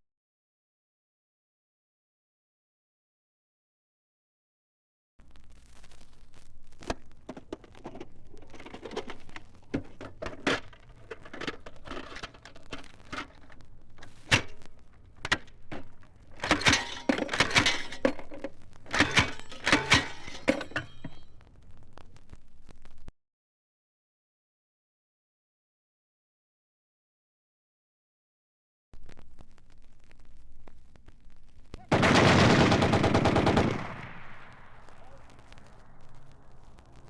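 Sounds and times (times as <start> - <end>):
clatter of sharp knocks: 7.3 - 21.3.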